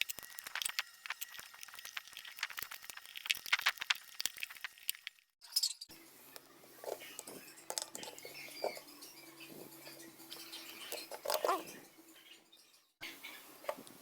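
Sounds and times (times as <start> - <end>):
small hard objects clicking: 0.0 - 5.3.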